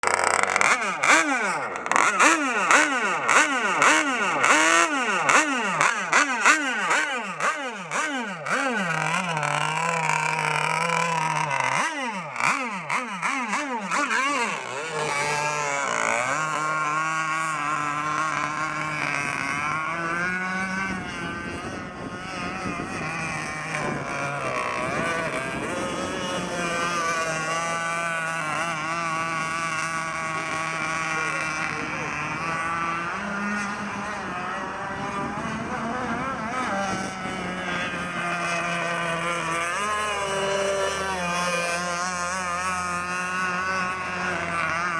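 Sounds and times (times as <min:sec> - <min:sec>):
two-stroke engine revving: 0:00.0 - 0:44.9.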